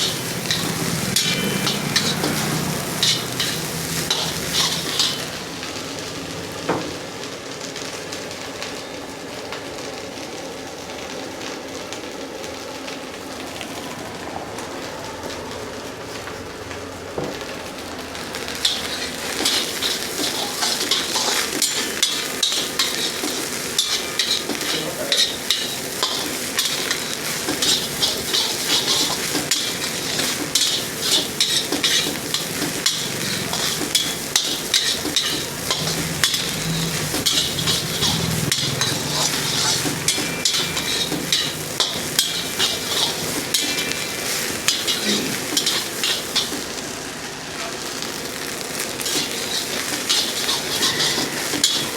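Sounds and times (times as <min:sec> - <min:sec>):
metal spatula scraping a wok: 0:00.0 - 0:05.4, 0:18.6 - 0:46.8, 0:49.0 - 0:51.9
food sizzling in a wok: 0:00.0 - 0:51.9.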